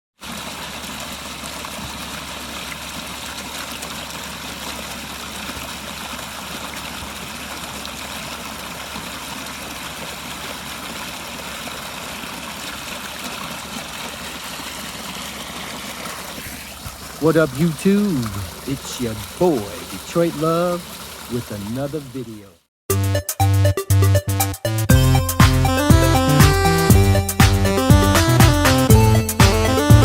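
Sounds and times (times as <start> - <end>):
water splashing over rocks: 0.2 - 22.7.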